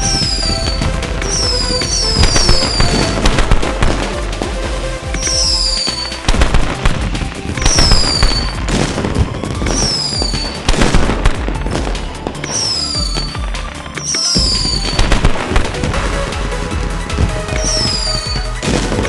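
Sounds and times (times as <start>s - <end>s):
fireworks bangs and crackles: 0.0s - 19.0s
music: 0.0s - 19.0s.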